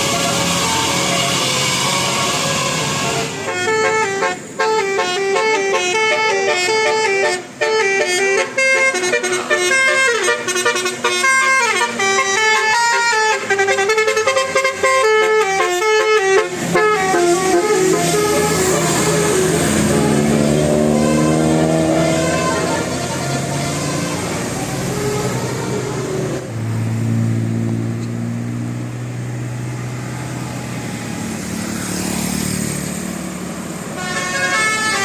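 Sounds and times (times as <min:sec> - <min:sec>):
bus horn playing fast tune: 0:00.0 - 0:26.4, 0:33.8 - 0:35.0.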